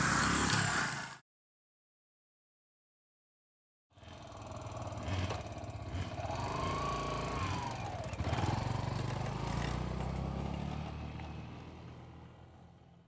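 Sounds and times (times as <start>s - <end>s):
motorcycle engine running: 4.0s - 12.3s.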